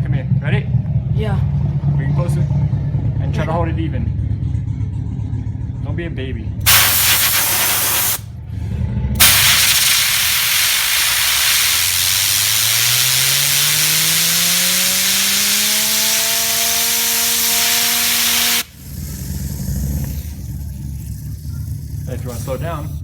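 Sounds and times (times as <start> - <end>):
compressed air hissing: 6.7 - 8.3, 9.2 - 23.0
fidget spinner whine: 9.2 - 23.0.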